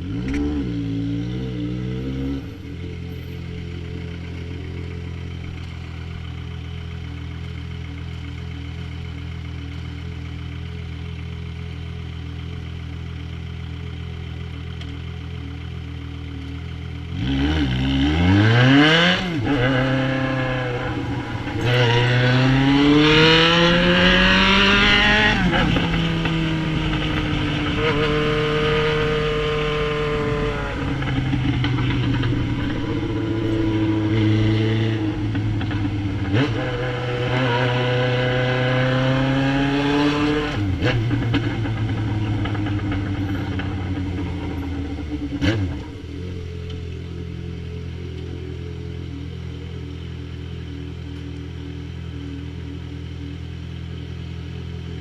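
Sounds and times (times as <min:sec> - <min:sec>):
motorcycle accelerating through gears: 0:00.0 - 0:10.1, 0:14.7 - 0:55.0
motorcycle engine idling: 0:02.5 - 0:17.1, 0:24.0 - 0:34.2, 0:40.6 - 0:55.0.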